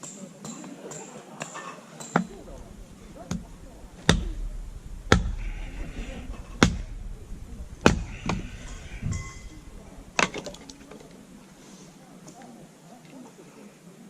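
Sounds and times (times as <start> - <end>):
firewood being split: 2.2 - 11.7.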